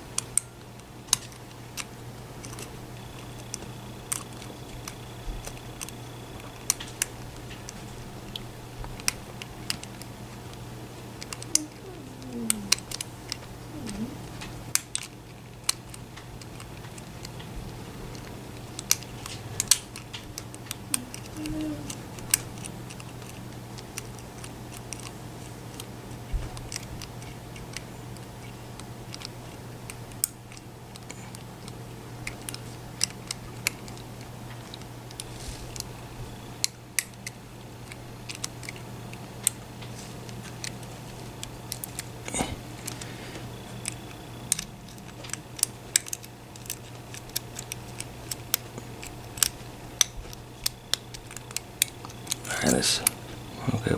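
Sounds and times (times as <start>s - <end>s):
steady low hum: 0.0s - 53.9s
lock pick clicking in a lock: 14.7s - 17.4s, 18.1s - 21.3s, 21.9s - 25.9s, 26.6s - 31.5s, 36.6s - 39.6s, 40.4s - 43.0s, 43.7s - 52.5s.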